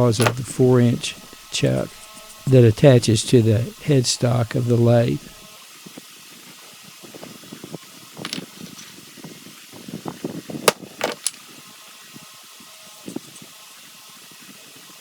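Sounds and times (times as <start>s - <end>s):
metal parts knocking and clicking: 0.0s - 0.5s.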